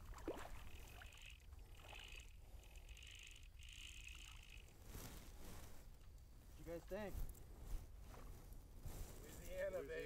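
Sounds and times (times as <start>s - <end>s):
high buzzing pulses: 0.6s - 5.1s.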